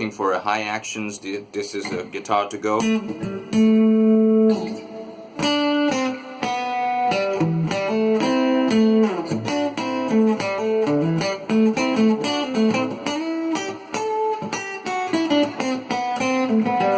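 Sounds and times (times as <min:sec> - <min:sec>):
acoustic guitar playing: 0:01.8 - 0:16.9.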